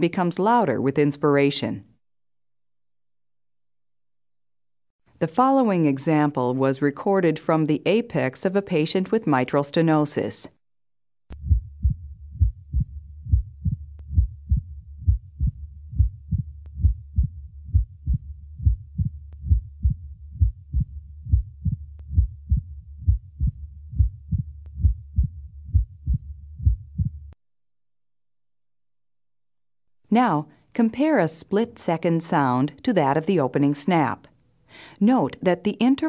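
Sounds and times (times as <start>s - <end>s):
heartbeat through stethoscope: 11.3s - 27.4s
high-pitched heart click: 11.3s - 27.4s.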